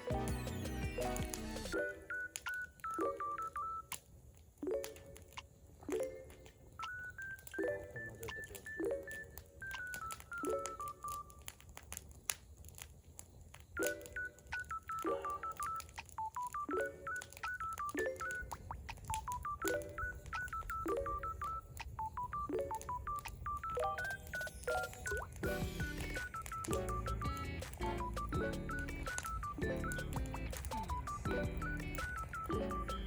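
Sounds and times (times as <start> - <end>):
simple electronic tune: 0.0 - 3.6, 19.2 - 33.0
sharp clicks: 4.7 - 7.6, 8.2 - 33.0.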